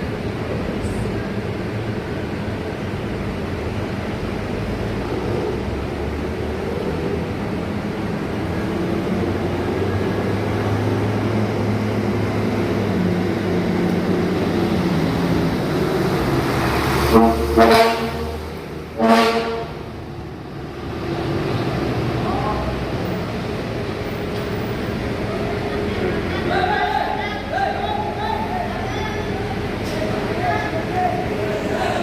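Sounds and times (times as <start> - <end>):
bus diesel engine running: 0.0 - 32.0
bus horn blasts: 17.0 - 20.0.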